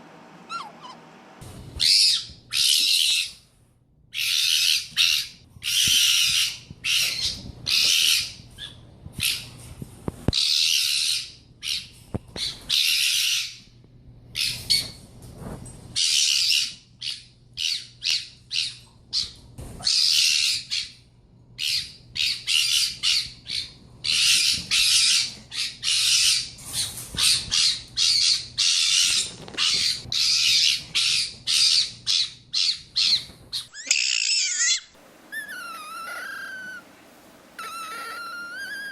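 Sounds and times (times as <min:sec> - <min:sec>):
fox screaming: 0:33.7 - 0:37.0, 0:37.6 - 0:38.9.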